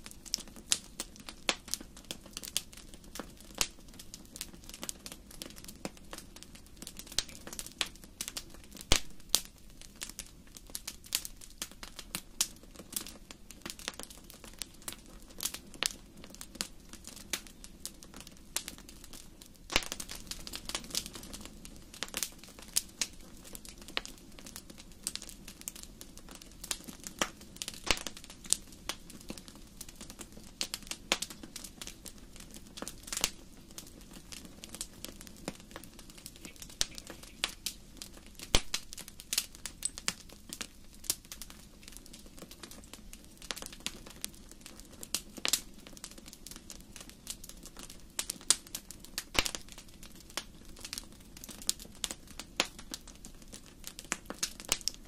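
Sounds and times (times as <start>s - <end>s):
low rumble of flames: 0.0s - 55.0s
wood fire crackling and popping: 0.0s - 55.0s.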